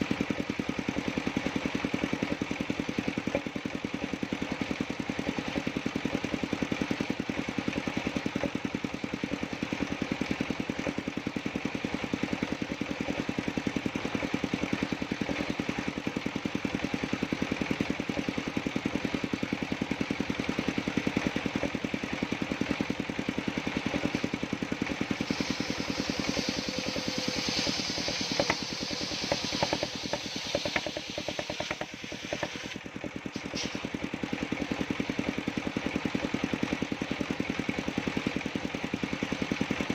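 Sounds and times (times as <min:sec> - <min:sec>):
sawmill engine running: 0:00.0 - 0:39.9
high hiss: 0:25.0 - 0:32.7
sharp knocks: 0:27.6 - 0:32.8.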